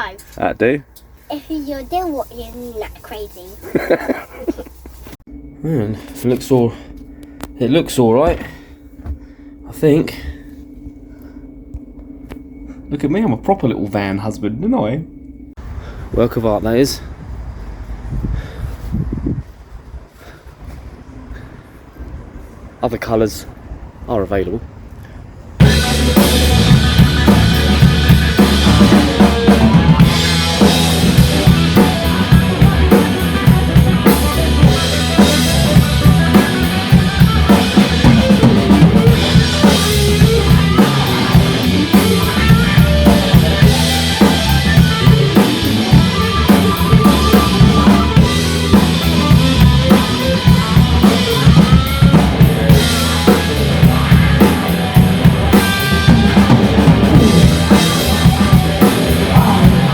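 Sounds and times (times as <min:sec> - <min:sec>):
background music with drum kit: 0:25.6 - 0:59.9.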